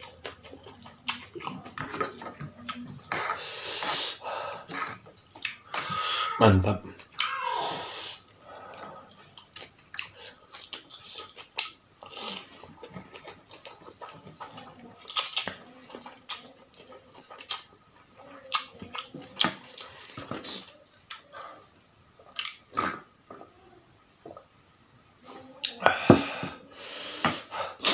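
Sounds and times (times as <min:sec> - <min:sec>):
wet chewing and lip-smacking: 0:00.0 - 0:03.4, 0:04.7 - 0:05.8, 0:08.3 - 0:17.8, 0:18.4 - 0:21.3, 0:22.2 - 0:22.7.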